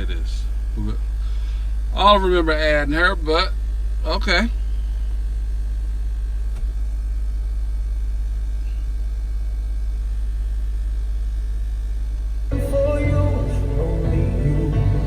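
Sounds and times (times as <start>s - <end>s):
low drone inside car cabin: 0.0s - 15.0s.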